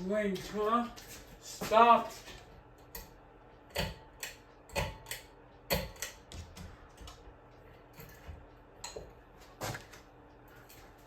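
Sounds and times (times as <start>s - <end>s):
hard parts clicking and knocking: 2.3s - 7.2s.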